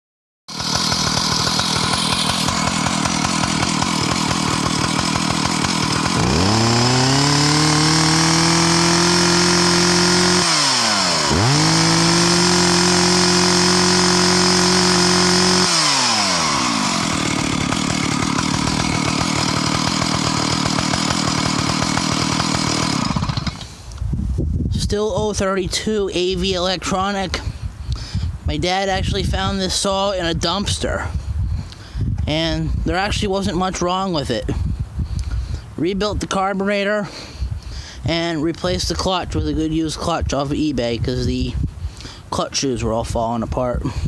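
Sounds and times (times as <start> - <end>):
chainsaw idling and revving: 0.5 - 24.0.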